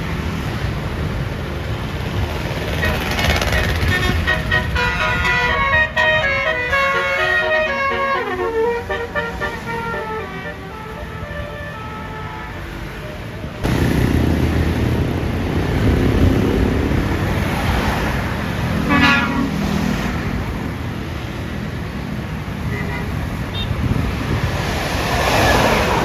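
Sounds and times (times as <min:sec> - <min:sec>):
engine and road noise: 0:00.0 - 0:26.0
multi-tone air horn melody: 0:02.8 - 0:12.9, 0:18.8 - 0:19.7.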